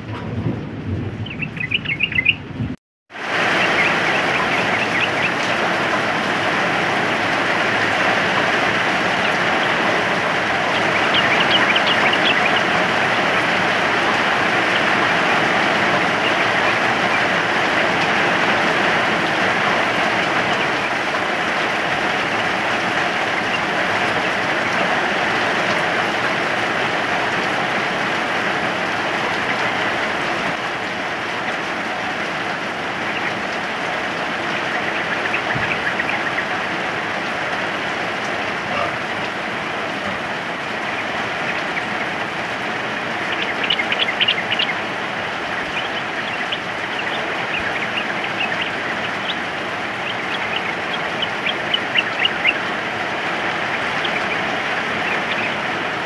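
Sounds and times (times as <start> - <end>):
rain hissing: 0.0 - 56.0
bulbuls calling: 1.2 - 2.4, 3.2 - 56.0.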